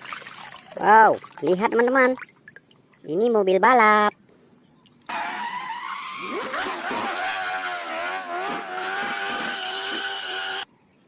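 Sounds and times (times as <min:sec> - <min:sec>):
high-revving race car engine: 0:05.1 - 0:10.7.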